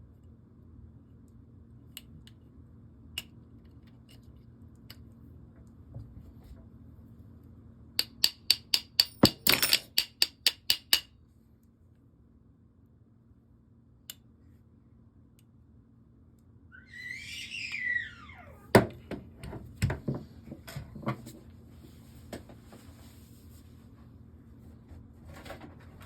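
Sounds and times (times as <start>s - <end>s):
metal parts clicking and knocking: 8.0s - 11.1s
whistle-like squeal: 16.7s - 18.6s.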